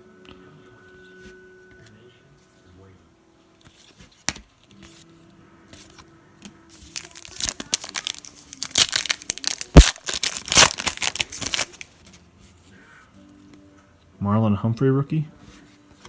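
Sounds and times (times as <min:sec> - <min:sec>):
wrapper crinkling and tearing: 0:06.8 - 0:12.0.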